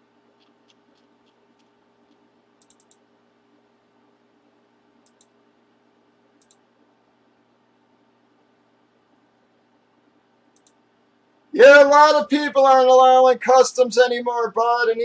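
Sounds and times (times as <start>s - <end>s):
faint room hum: 0.0s - 15.0s
sharp faint clicks: 0.4s - 3.0s, 6.4s - 6.6s.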